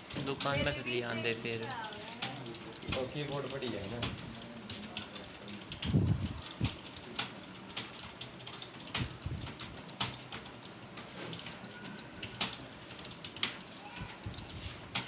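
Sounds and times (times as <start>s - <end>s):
keyboard keys clicking: 2.2s - 13.7s.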